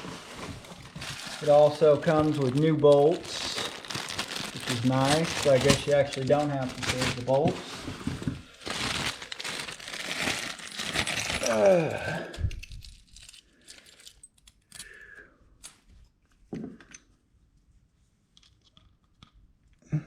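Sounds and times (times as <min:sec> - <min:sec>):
packaging rustling: 0:00.0 - 0:14.0.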